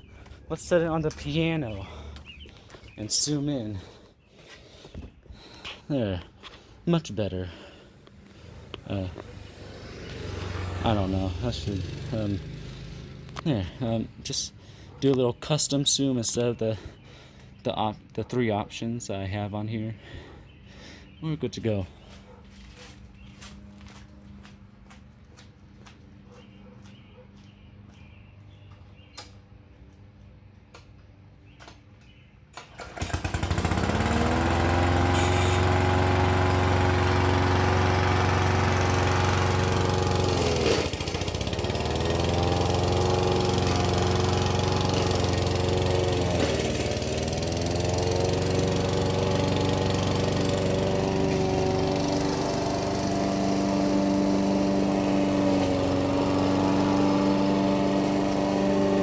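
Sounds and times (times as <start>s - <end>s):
small engine revving and running: 7.6s - 13.9s, 32.7s - 59.0s.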